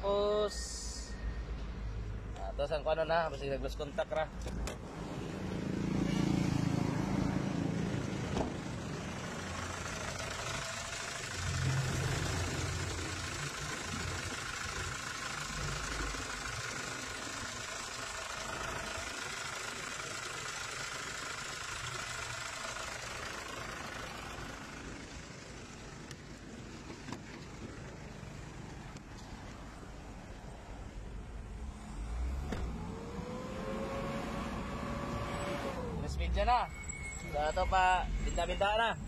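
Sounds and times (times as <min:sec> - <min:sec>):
diesel engine idling: 0:06.6 - 0:32.2.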